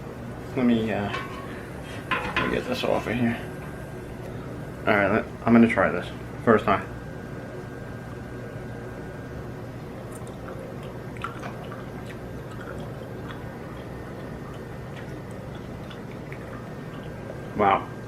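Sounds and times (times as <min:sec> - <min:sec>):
steady background hum: 0:00.0 - 0:18.0
person chewing: 0:10.1 - 0:17.2.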